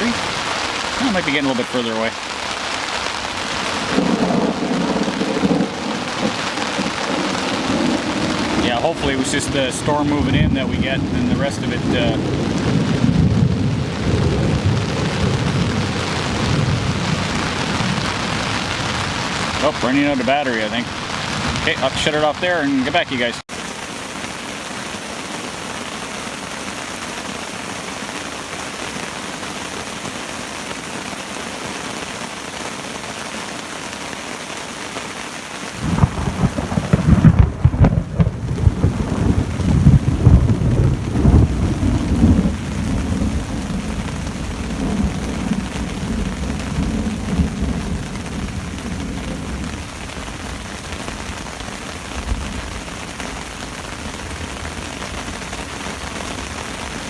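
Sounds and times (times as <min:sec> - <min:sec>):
steady rain: 0:00.0 - 0:57.0
thunder rumbling: 0:03.0 - 0:23.0, 0:35.8 - 0:57.0.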